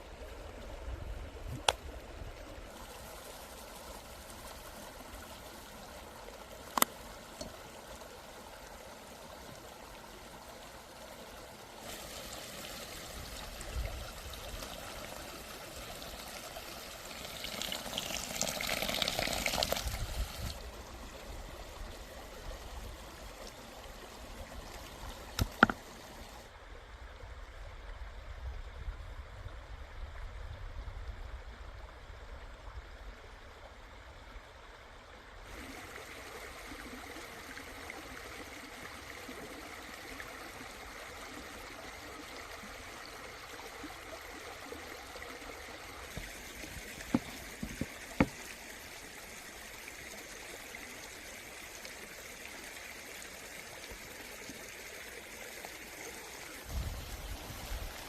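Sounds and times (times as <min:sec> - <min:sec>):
water-like rushing hiss: 0:02.4 - 0:10.4, 0:11.3 - 0:26.5, 0:35.5 - 0:58.0.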